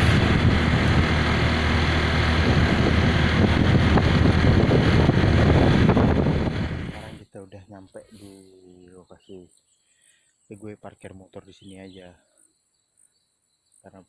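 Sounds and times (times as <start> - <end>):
motorcycle engine running: 0.0 - 7.2
road and wind noise: 0.0 - 7.2.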